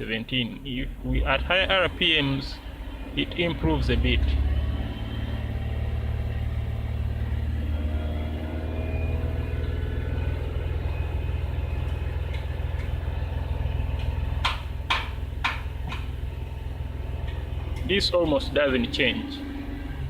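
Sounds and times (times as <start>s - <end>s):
car engine running: 0.0s - 20.0s
sharp knocks: 14.0s - 16.1s.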